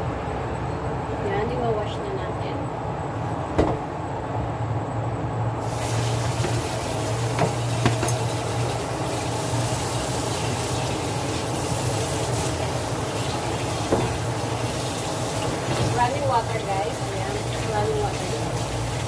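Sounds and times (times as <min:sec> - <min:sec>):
kitchen tap running water: 0:05.6 - 0:19.0.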